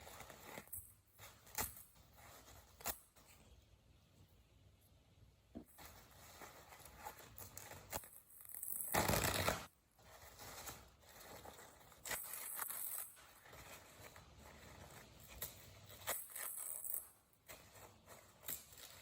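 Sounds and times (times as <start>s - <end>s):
paper towel tearing: 6.5s - 12.7s.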